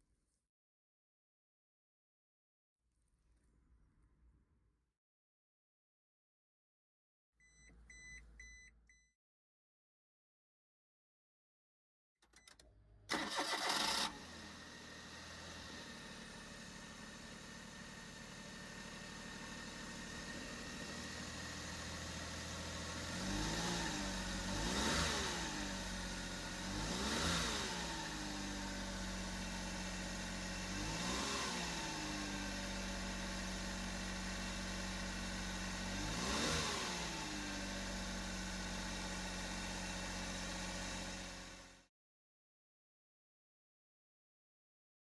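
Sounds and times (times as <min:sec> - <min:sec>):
engine revving: 0:13.1 - 0:14.7, 0:20.2 - 0:41.6.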